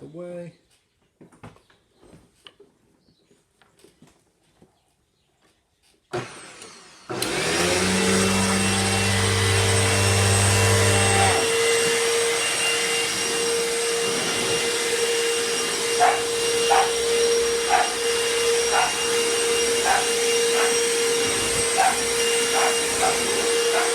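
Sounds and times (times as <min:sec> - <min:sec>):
vacuum cleaner motor whining: 0:06.1 - 0:23.9.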